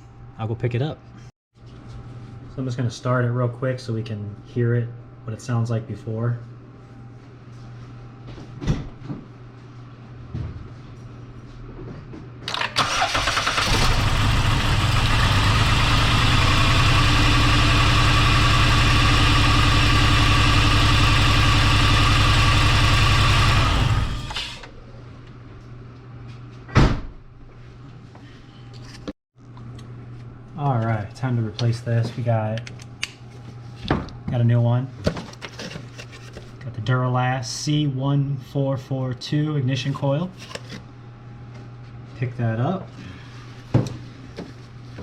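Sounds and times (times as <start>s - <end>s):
engine cranking and misfiring: 12.5s - 24.7s.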